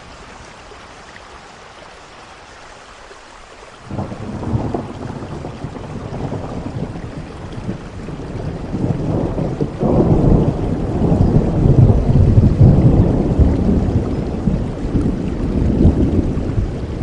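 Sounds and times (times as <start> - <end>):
steady rain: 0.0 - 17.0
thunder rolling: 3.9 - 17.0.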